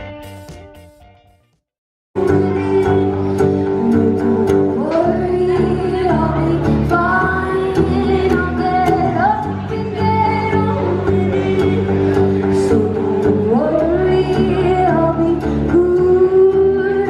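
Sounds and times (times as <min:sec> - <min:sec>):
acoustic backing music: 0:00.0 - 0:01.6, 0:02.2 - 0:17.0
woman singing pop music: 0:02.2 - 0:17.0.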